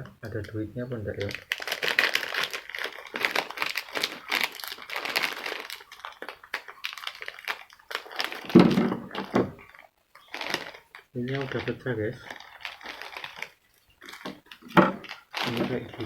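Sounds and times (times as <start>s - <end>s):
plastic wrapper crinkling: 0.2s - 16.0s.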